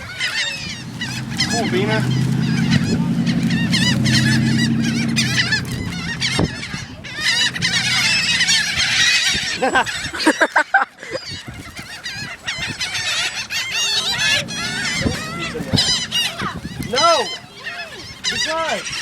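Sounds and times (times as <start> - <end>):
steady low hum: 0.0 - 10.0, 12.8 - 17.5
flock of birds squawking: 0.0 - 19.0.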